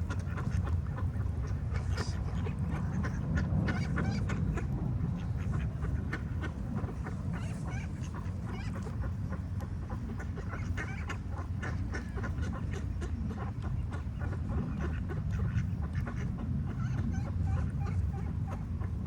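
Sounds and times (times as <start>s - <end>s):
ducks quacking: 0.0s - 19.0s
steady low rumble: 0.0s - 19.0s.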